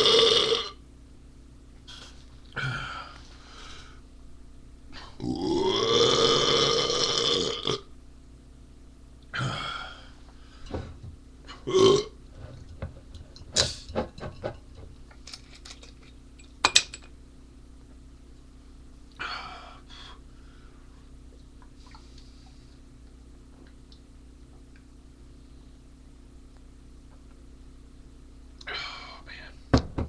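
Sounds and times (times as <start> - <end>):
man belching: 0.0 - 0.8, 5.2 - 7.9, 11.6 - 12.2.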